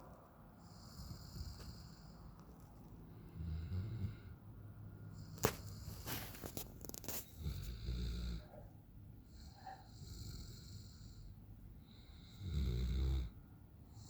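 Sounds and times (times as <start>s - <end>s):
soft breathing: 0.5s - 12.4s
puppy snoring: 0.6s - 2.2s, 3.2s - 4.4s, 5.1s - 8.6s, 9.2s - 11.3s, 11.9s - 14.0s.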